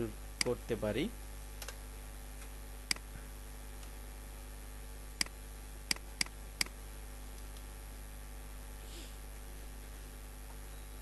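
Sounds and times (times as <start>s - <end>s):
low electrical hum: 0.0s - 11.0s
computer mouse clicks: 5.2s - 6.8s.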